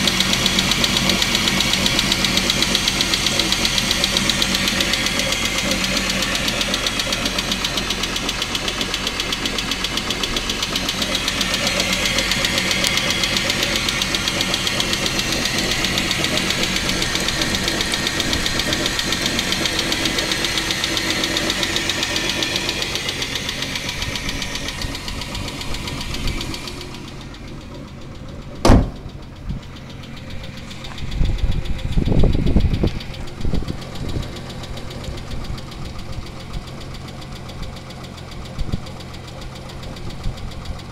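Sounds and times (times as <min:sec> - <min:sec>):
engine knocking rattle: 0:00.0 - 0:40.9
low rumbling thumps: 0:22.3 - 0:36.0
sharp bang: 0:28.6 - 0:29.2.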